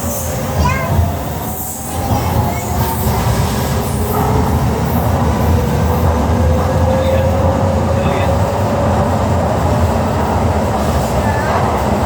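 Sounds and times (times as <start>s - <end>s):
train rumbling on rails: 0.0s - 12.0s.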